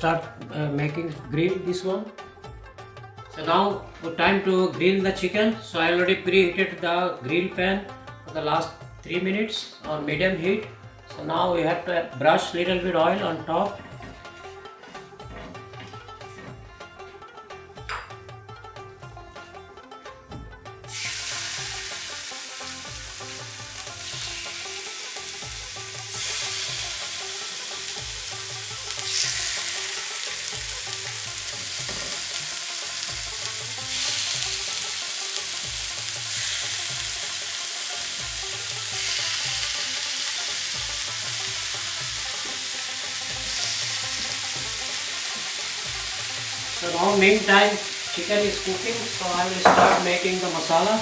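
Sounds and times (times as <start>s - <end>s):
chicken sizzling on grill pan: 20.9s - 51.0s.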